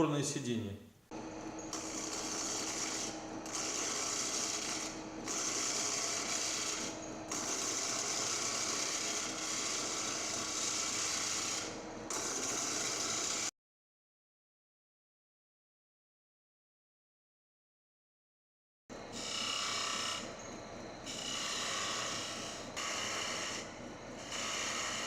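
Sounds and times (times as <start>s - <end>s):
wood lathe running: 1.6s - 13.5s, 19.2s - 20.4s, 21.1s - 25.0s
lathe tool cutting wood: 1.7s - 13.5s, 19.2s - 20.4s, 21.1s - 25.0s.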